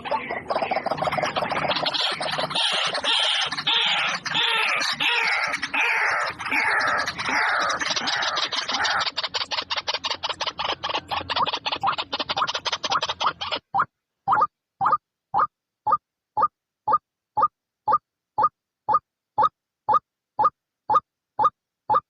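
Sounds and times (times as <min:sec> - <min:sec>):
fast bird chatter: 0:00.0 - 0:15.0.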